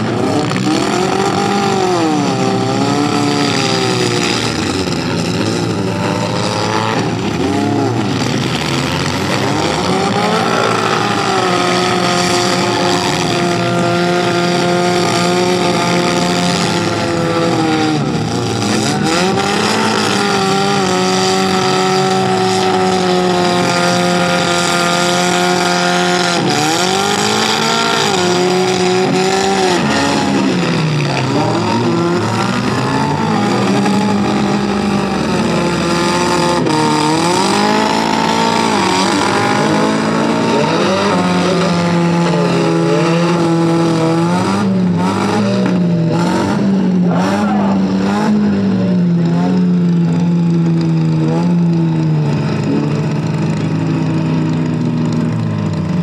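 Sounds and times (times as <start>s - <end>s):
car engines revving hard: 0.0s - 56.0s.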